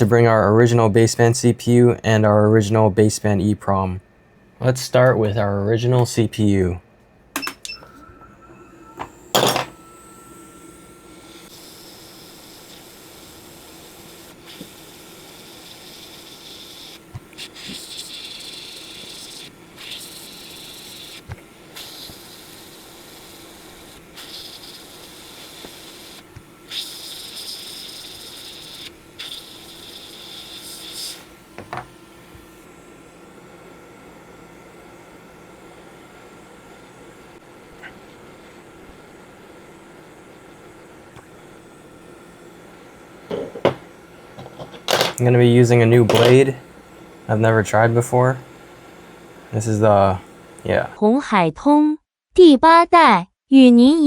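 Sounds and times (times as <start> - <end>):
hot air blower hissing: 8.6 - 51.0.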